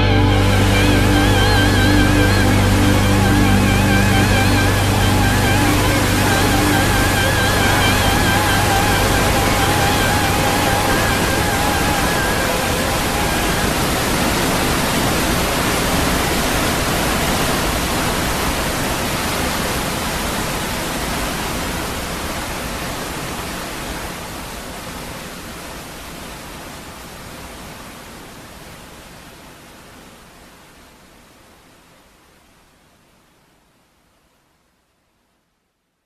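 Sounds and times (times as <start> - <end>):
held music notes: 0.0 - 15.0
steady rushing noise: 0.0 - 25.0.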